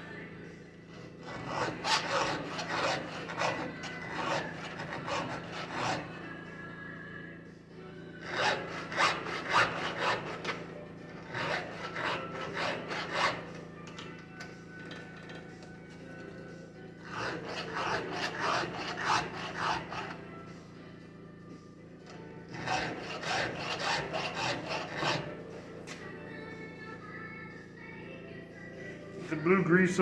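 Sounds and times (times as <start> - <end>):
file rasping on chainsaw chain: 1.2 - 6.3, 8.2 - 14.2, 17.0 - 20.3, 22.5 - 25.5.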